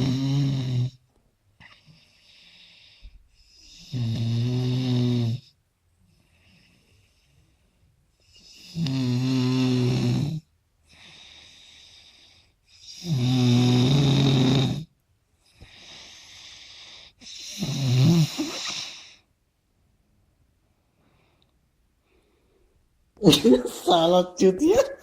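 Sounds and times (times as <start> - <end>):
person snoring heavily: 0.0 - 1.0, 3.5 - 5.5, 8.4 - 12.2, 12.8 - 14.9, 15.7 - 19.2
soft breaths: 1.5 - 3.8, 5.9 - 8.7, 10.8 - 13.0, 15.3 - 19.4, 20.6 - 23.0.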